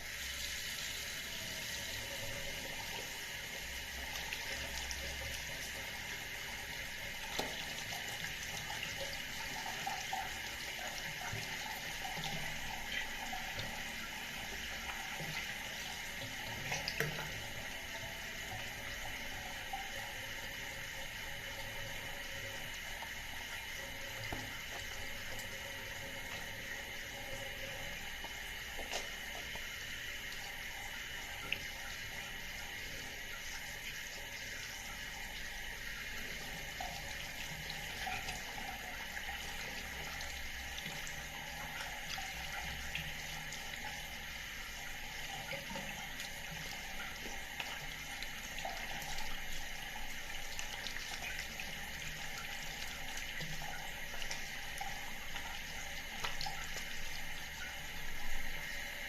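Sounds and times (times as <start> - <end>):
tap water running into sink: 0.0 - 59.0.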